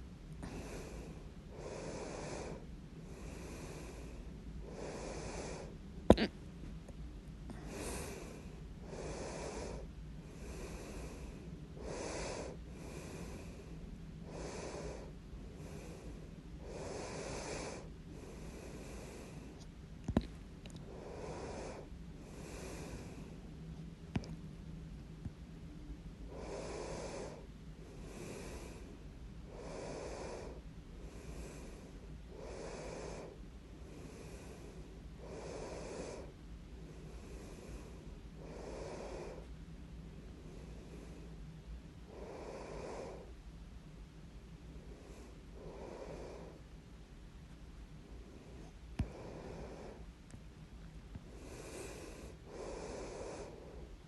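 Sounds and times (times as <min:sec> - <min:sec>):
person breathing: 0:00.4 - 0:06.3, 0:07.5 - 0:23.5, 0:26.3 - 0:39.5, 0:42.0 - 0:43.4, 0:44.7 - 0:46.8, 0:48.1 - 0:50.2, 0:51.2 - 0:54.0
person hiccuping: 0:06.1 - 0:06.3.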